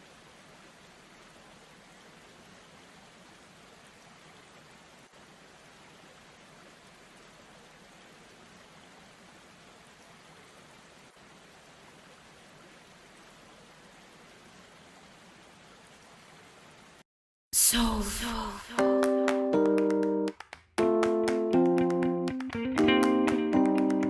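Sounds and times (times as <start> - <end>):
faint waterfall rush: 0.0 - 17.0.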